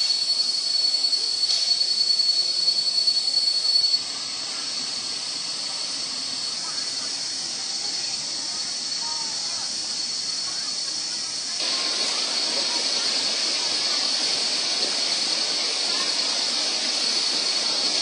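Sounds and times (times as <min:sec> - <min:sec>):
waterfall rushing: 0:11.6 - 0:18.0.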